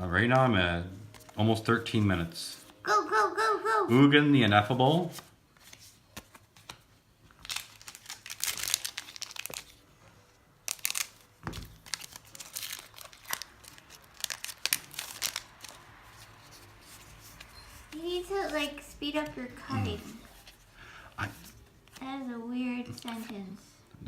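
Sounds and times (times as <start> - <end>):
foil wrappers crinkling and tearing: 7.3 - 9.9, 10.6 - 17.5.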